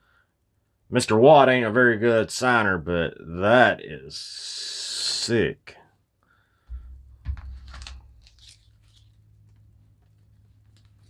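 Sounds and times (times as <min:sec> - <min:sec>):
soft knocks: 0:06.7 - 0:07.7
trading cards rustling and clicking: 0:07.2 - 0:11.0.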